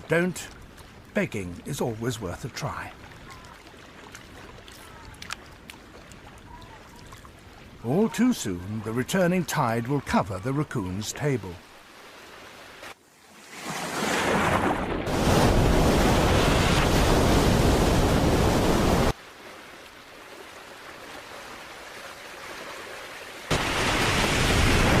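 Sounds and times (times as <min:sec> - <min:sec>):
ocean waves washing in: 0:10.5 - 0:25.0.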